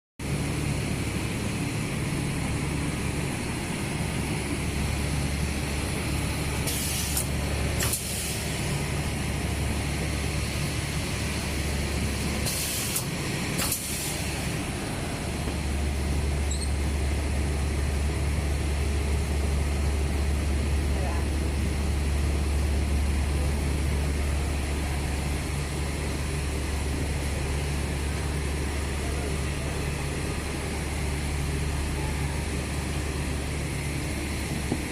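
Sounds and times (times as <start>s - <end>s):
machine humming and whining: 0.2s - 34.9s
sharp air hisses: 6.6s - 8.6s, 12.4s - 14.5s.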